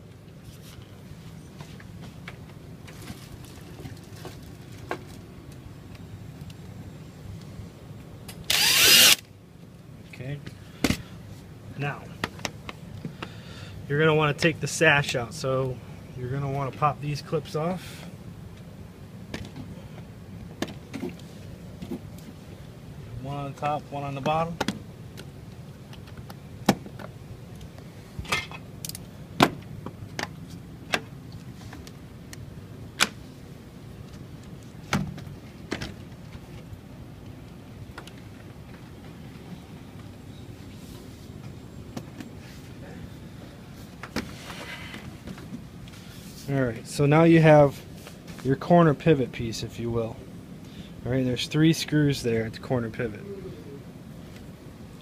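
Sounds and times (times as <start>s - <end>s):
low steady hum: 0.0s - 55.0s
power drill driving a screw: 8.5s - 9.2s.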